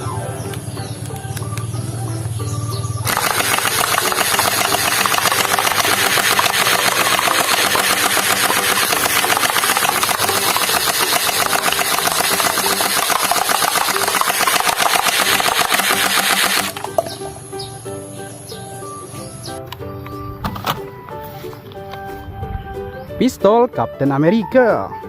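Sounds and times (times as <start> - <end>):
toy gun automatic rattle: 3.1 - 17.1.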